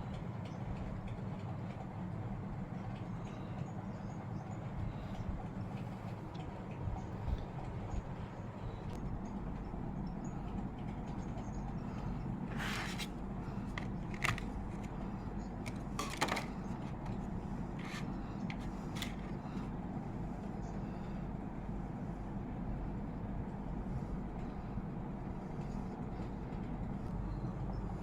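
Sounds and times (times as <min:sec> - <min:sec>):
steady low hum: 0:00.0 - 0:28.0
handling clicks and scrapes: 0:12.4 - 0:19.7.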